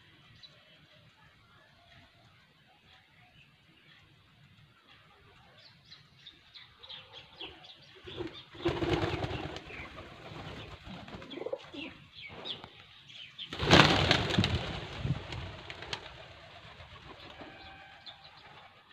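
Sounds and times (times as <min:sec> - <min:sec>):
flock of birds chirping: 0:00.0 - 0:18.9
wings flapping: 0:08.1 - 0:11.8, 0:13.5 - 0:18.9.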